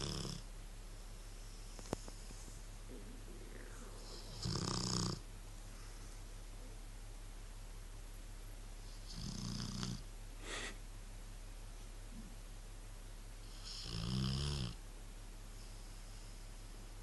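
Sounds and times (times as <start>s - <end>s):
dog snoring: 0.0s - 0.5s, 3.3s - 5.2s, 8.9s - 10.1s, 13.4s - 14.8s.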